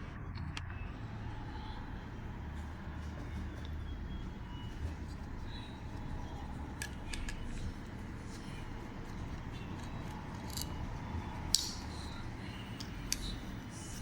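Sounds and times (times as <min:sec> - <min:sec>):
metallic clicks of folding knife: 0:11.5 - 0:12.1.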